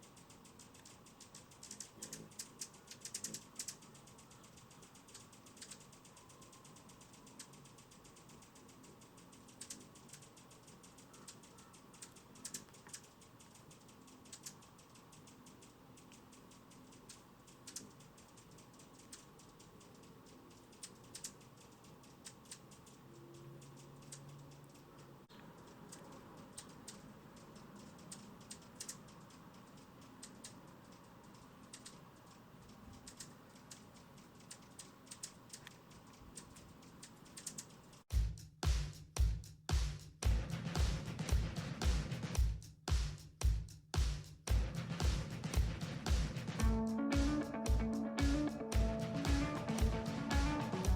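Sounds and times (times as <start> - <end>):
hummingbird chip calls: 0.0 - 38.0, 46.7 - 50.9
music with a beat: 38.1 - 50.9.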